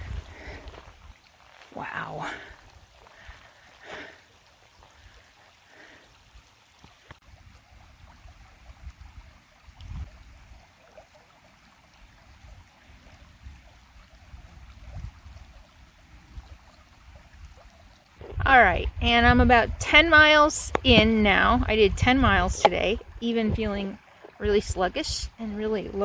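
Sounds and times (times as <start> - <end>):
low rumbles: 18.2 - 26.0.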